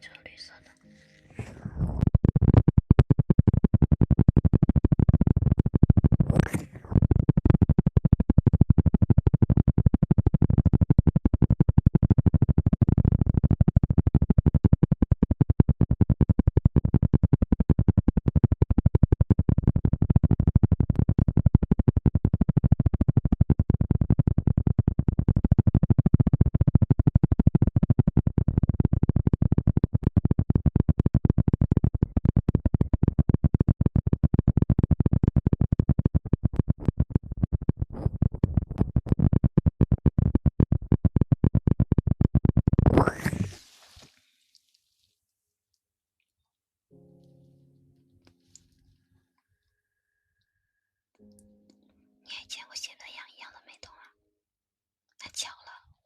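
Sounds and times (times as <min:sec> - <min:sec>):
scrubbing on microphone: 0:00.9 - 0:02.9, 0:04.1 - 0:07.7, 0:34.1 - 0:44.2.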